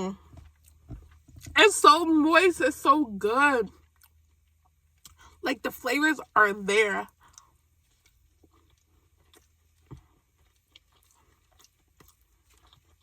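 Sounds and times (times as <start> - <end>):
faint chewing: 0.1 - 1.6, 3.7 - 5.4, 7.1 - 13.0.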